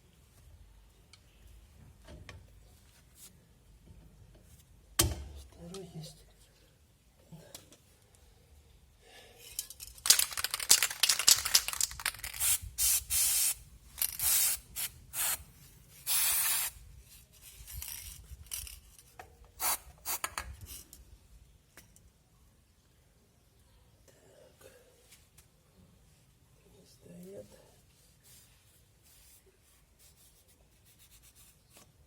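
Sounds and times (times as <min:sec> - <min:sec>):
aerosol can spraying: 0:12.4 - 0:13.6, 0:14.2 - 0:15.4, 0:16.1 - 0:16.8.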